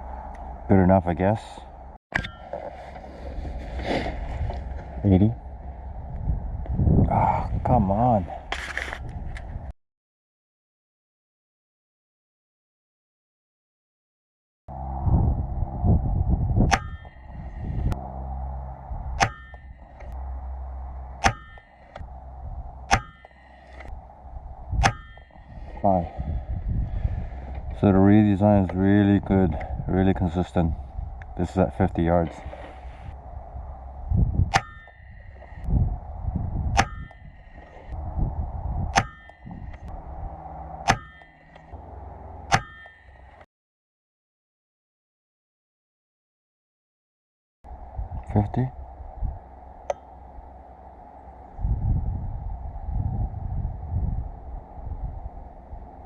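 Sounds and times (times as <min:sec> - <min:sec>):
low rumble: 0:00.0 - 0:09.7, 0:14.7 - 0:43.5, 0:47.7 - 0:56.0
air rifle shots with metallic ring: 0:16.7 - 0:17.3, 0:19.2 - 0:19.8, 0:21.2 - 0:22.0, 0:22.9 - 0:23.9, 0:24.8 - 0:25.5, 0:34.5 - 0:35.4, 0:36.8 - 0:37.3, 0:39.0 - 0:39.6, 0:40.9 - 0:41.6, 0:42.5 - 0:43.2
air rifle shots: 0:21.2 - 0:22.1, 0:22.9 - 0:23.9, 0:24.8 - 0:25.4.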